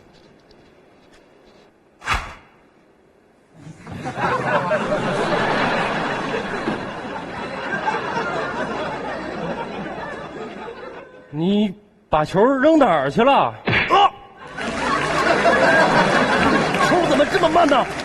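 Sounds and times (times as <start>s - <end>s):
thud: 2.0s - 2.6s
studio audience laughing: 3.8s - 11.3s, 14.4s - 18.0s.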